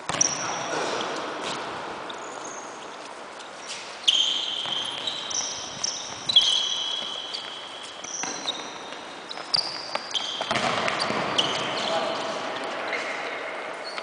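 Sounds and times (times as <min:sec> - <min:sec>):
ball strikes: 0:00.0 - 0:01.6, 0:04.5 - 0:11.7
shoes squeaking on court floor: 0:00.0 - 0:14.0.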